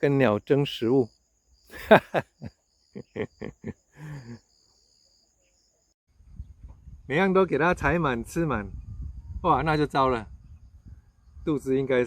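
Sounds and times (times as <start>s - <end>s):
insect chirring: 0.0s - 5.9s.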